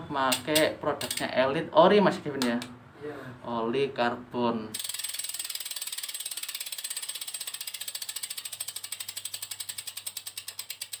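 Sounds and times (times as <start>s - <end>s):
bicycle freehub ticking: 4.8s - 11.0s.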